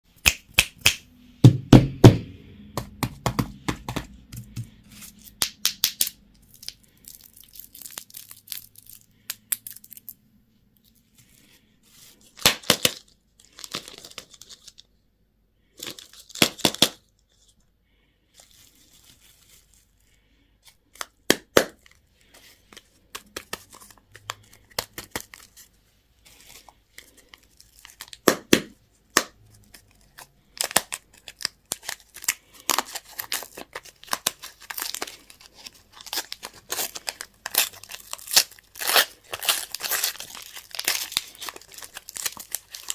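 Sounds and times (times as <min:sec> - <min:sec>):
plastic packaging tearing and crinkling: 0:06.0 - 0:10.1, 0:12.3 - 0:14.8, 0:26.3 - 0:28.4, 0:29.6 - 0:42.9.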